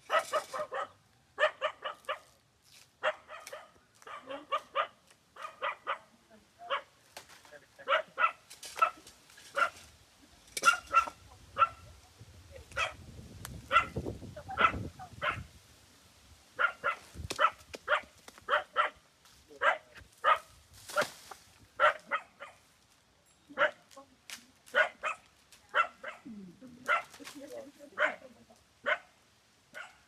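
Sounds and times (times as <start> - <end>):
dog barking: 0.1 - 2.4, 3.0 - 6.1, 6.7 - 6.9, 7.8 - 9.8, 10.6 - 11.8, 12.8 - 13.0, 13.7 - 14.0, 14.6 - 15.5, 16.6 - 19.0, 19.6 - 20.5, 21.8 - 22.6, 23.6 - 23.8, 24.7 - 27.2, 28.0 - 30.0.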